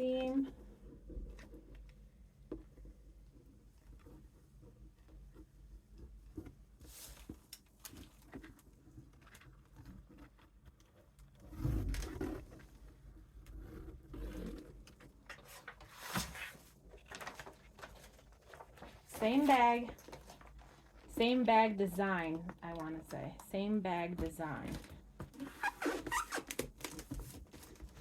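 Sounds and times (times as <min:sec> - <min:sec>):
paper rustling: 0:15.3 - 0:21.1, 0:24.7 - 0:28.0.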